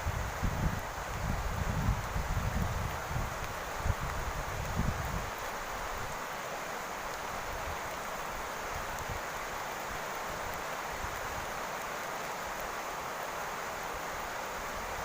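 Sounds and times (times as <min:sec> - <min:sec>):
rain falling on a roof: 0:00.0 - 0:15.0.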